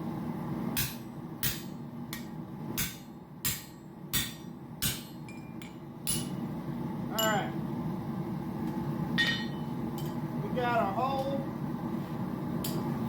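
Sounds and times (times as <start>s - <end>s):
hammer striking steel drift: 0.8s - 6.4s.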